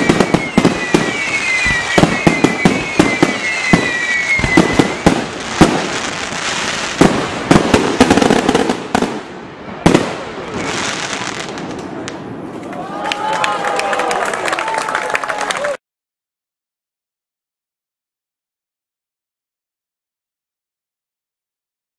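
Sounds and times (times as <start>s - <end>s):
falling firework whistles: 0.0s - 9.1s
firework bursts and bangs: 0.0s - 12.6s.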